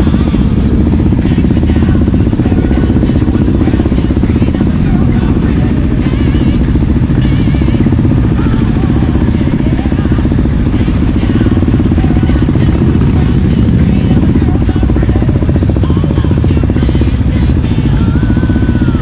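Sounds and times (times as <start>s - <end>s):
motorcycle engine running: 0.0s - 19.0s
music: 0.0s - 19.0s.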